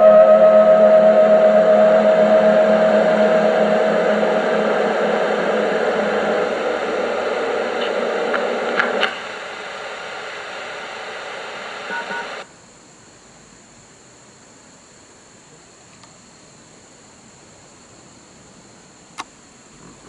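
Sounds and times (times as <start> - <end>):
loudspeaker static hiss: 0.0 - 20.0
loudspeaker clicks: 7.7 - 9.4
short electronic beeps: 11.9 - 12.3.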